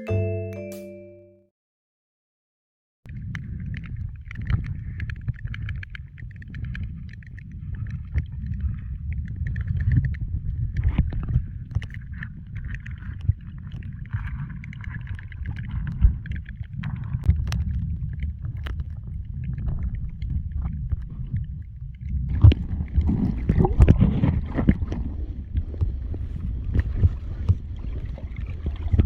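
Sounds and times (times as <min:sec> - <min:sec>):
muffled stream rumble: 0:03.1 - 0:29.0.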